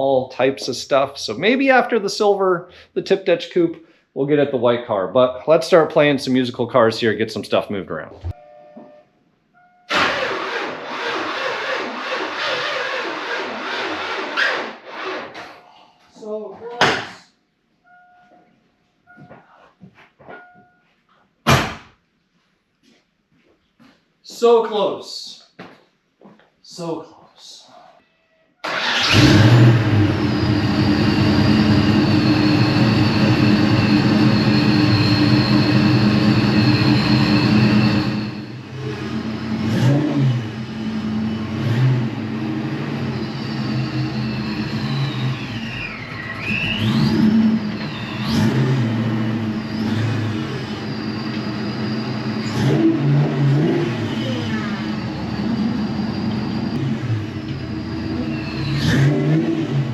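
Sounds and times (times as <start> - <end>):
car engine idling and revving: 28.7 - 59.9.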